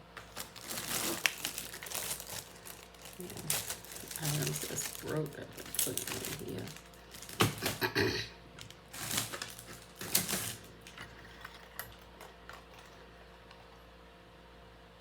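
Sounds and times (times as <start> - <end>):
bag rustling: 0.2 - 7.9, 8.6 - 11.0.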